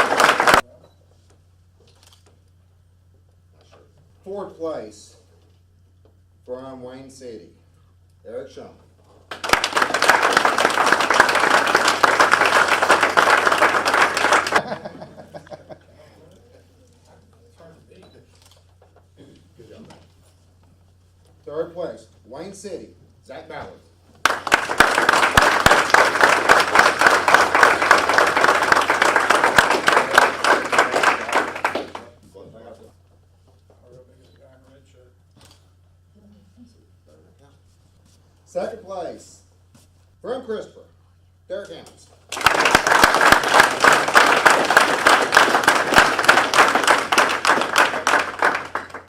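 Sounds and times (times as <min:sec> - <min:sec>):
audience applauding: 0:00.0 - 0:00.6, 0:09.3 - 0:14.9, 0:24.2 - 0:32.2, 0:42.3 - 0:49.0.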